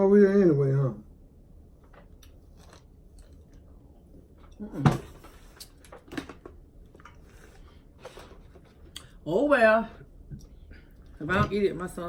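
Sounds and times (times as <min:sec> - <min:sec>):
soft chewing: 0:02.0 - 0:04.7.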